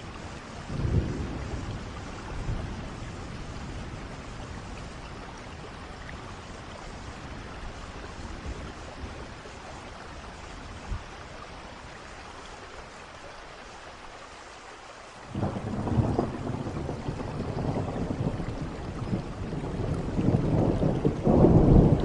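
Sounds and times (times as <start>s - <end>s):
thunder rumbling: 0.0s - 9.6s, 15.3s - 22.0s
steady rainfall: 0.0s - 22.0s.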